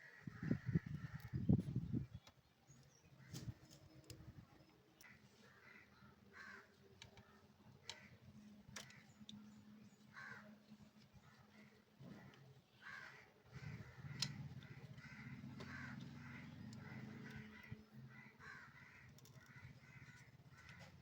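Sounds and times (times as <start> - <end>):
faint crow cawing: 0.0 - 1.4, 5.0 - 21.0
sharp clicks: 14.1 - 14.8.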